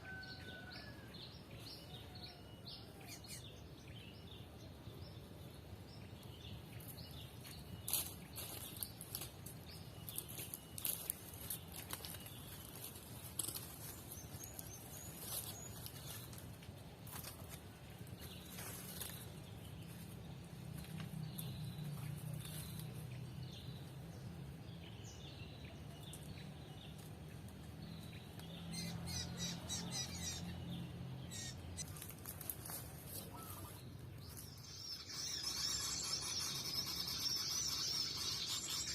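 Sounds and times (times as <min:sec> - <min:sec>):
small birds chirping: 0:03.0 - 0:38.9.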